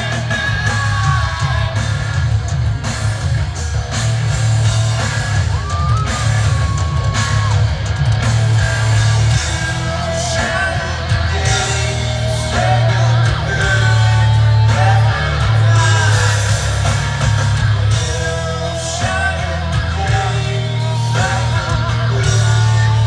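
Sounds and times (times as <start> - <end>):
rock band playing: 0.0 - 23.0
person singing: 9.8 - 17.0, 17.9 - 23.0.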